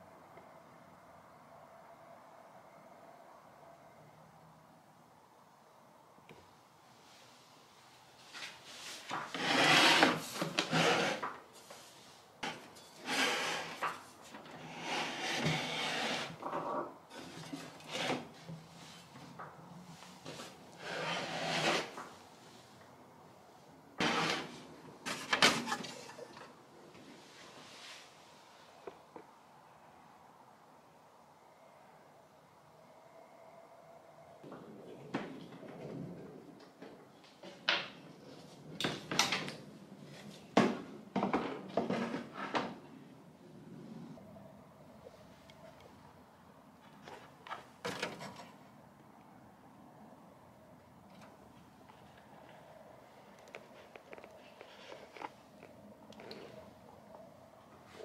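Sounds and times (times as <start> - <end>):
faint steady hum: 0.0 - 9.2, 25.6 - 41.4
rubbing and scraping handling: 8.2 - 22.2, 53.5 - 56.8.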